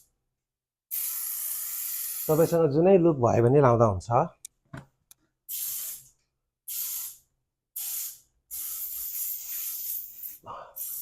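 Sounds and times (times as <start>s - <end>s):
aerosol spray hissing: 0.9s - 2.6s, 5.5s - 6.1s, 6.7s - 7.2s, 7.8s - 11.0s.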